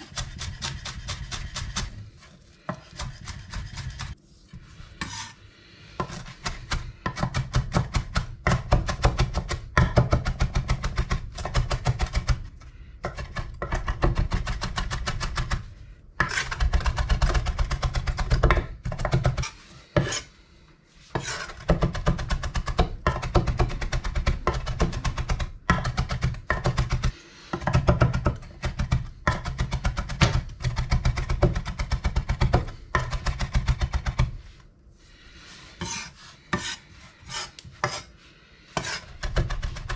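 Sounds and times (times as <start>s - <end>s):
knife chopping on cutting board: 6.0s - 15.6s, 21.2s - 34.3s, 35.8s - 38.1s, 38.8s - 39.9s.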